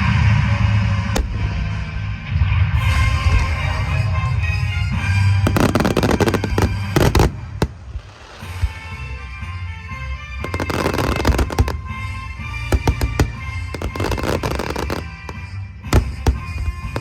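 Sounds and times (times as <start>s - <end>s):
music playing: 0.0s - 17.0s
fireworks bursting and crackling: 1.0s - 2.2s, 4.7s - 9.4s, 10.3s - 17.0s.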